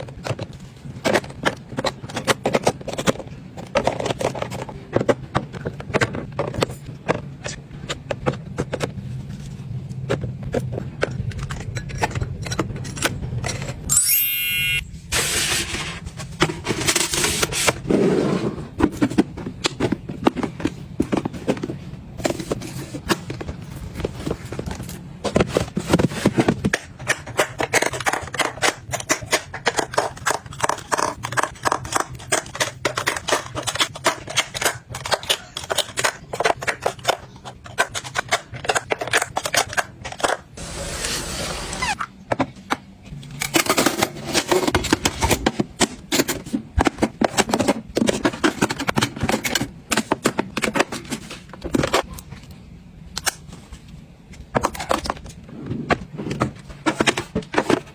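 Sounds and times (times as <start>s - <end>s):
plastic objects clicking and tapping: 0.0s - 9.3s, 18.8s - 40.6s.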